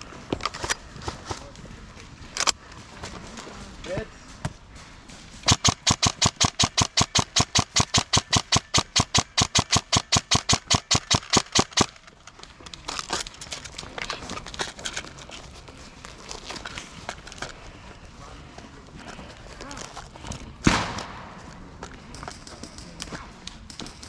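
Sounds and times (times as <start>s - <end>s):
faint airsoft shots: 5.4s - 11.9s, 20.6s - 24.0s
airsoft gun full-auto burst: 5.5s - 11.9s.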